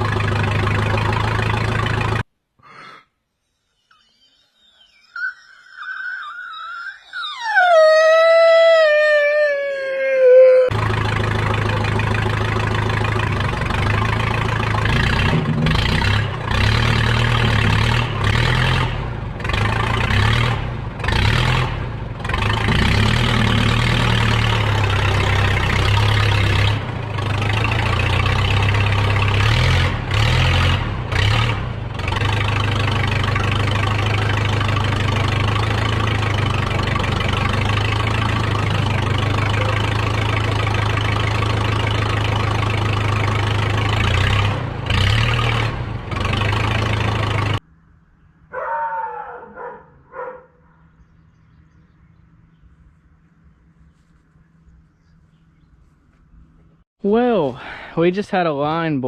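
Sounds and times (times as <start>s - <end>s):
backhoe engine starting and running: 0.0s - 2.3s, 5.4s - 47.7s.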